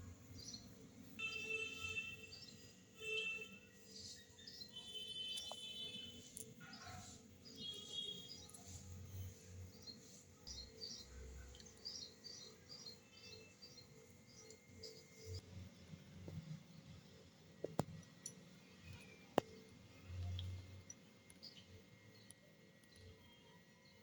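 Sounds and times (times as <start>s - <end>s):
faint bird chirping: 0.0s - 15.4s.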